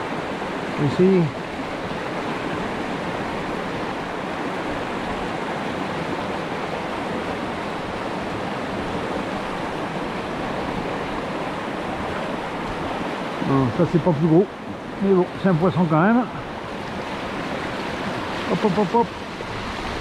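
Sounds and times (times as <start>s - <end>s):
river water rushing: 0.0s - 20.0s.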